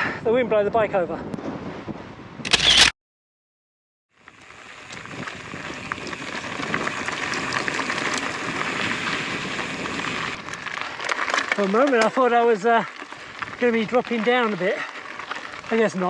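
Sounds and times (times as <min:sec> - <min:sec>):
wind buffeting microphone: 0:00.0 - 0:02.5, 0:04.7 - 0:11.2, 0:12.4 - 0:16.0
bike tyres rolling over gravel: 0:04.2 - 0:16.0.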